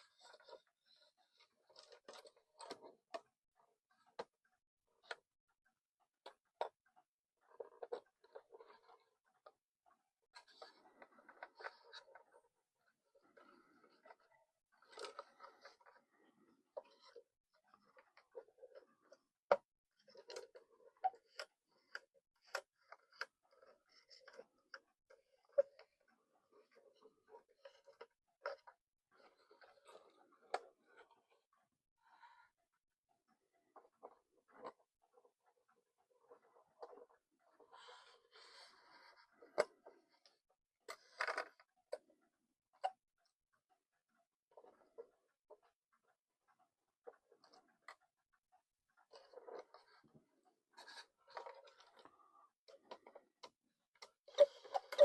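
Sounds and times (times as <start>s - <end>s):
soft rustles and scrapes: 0.0s - 4.3s.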